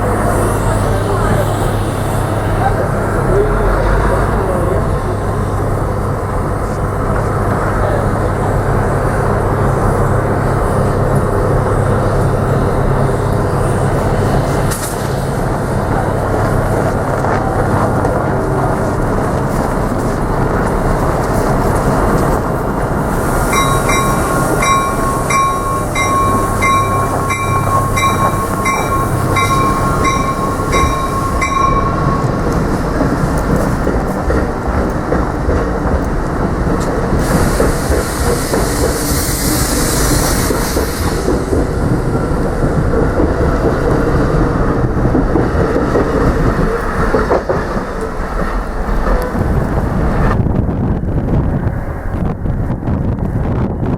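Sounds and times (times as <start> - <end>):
train wheels clattering: 13.8 - 50.4
steady high tone: 23.5 - 33.1.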